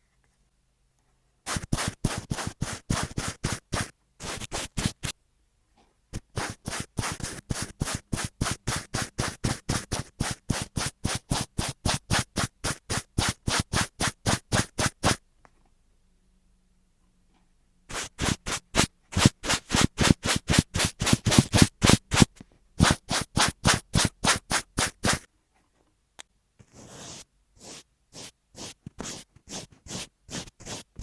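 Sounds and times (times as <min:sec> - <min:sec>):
rhythmic scratching strokes: 0:01.5 - 0:05.1, 0:06.2 - 0:15.2, 0:17.9 - 0:25.3.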